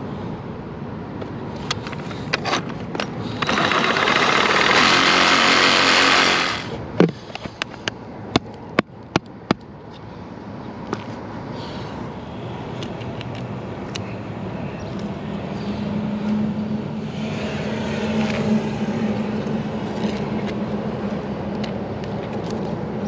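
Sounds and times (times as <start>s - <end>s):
power tool running: 3.4s - 6.8s.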